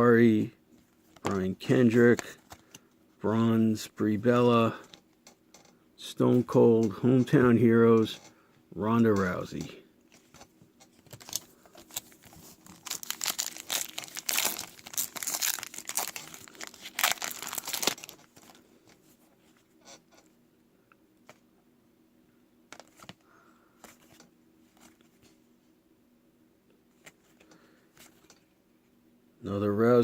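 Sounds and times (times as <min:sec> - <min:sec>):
foil wrapper crinkling and tearing: 0:11.1 - 0:18.6.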